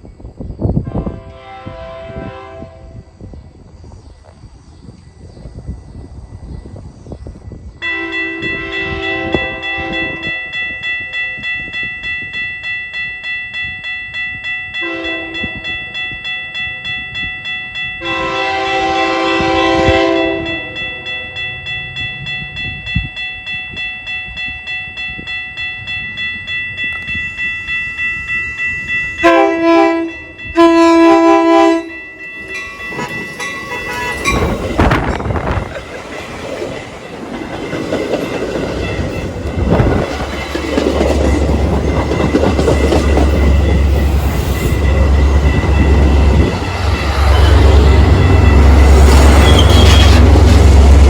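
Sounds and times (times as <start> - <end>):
train rolling: 0.0 - 51.0
train air horn: 0.8 - 3.1, 7.8 - 10.4, 14.8 - 15.8, 18.0 - 21.4, 29.2 - 32.0
bell ringing: 20.2 - 51.0.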